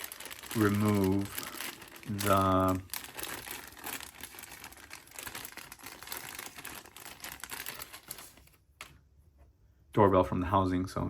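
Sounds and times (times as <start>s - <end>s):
plastic packaging crinkling: 0.0s - 8.7s.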